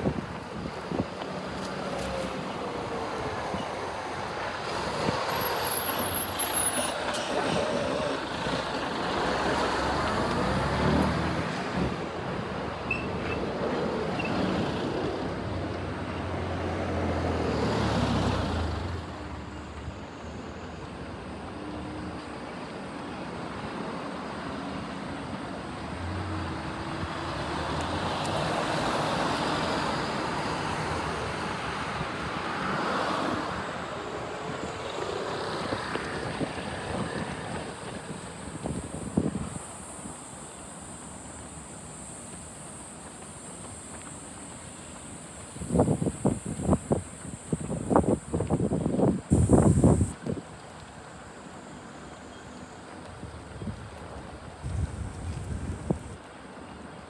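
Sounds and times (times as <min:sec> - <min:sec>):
heavy vehicle engines: 0:00.0 - 0:57.0
road traffic passing: 0:00.0 - 0:57.0.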